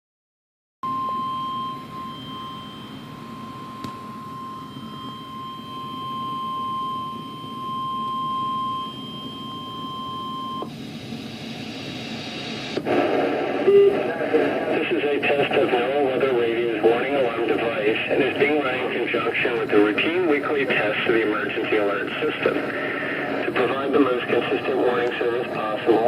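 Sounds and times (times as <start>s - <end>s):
steady high alarm tone: 0.8s - 10.7s
radio noise: 10.6s - 26.0s
announcer speaking: 14.7s - 26.0s.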